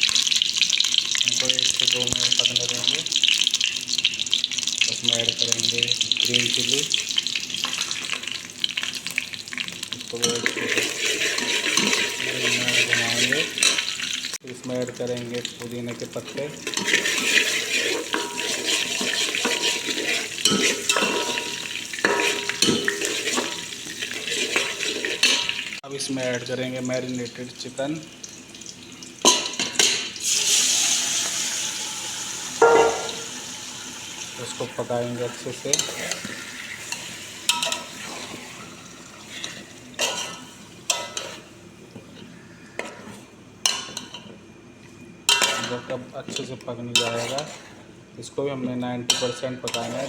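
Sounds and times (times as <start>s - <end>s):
leaves sizzling in hot oil: 0.0s - 41.6s
metal spoon scraping a pot: 10.2s - 13.9s, 16.3s - 25.6s, 34.3s - 38.4s, 39.3s - 41.4s, 46.9s - 47.8s.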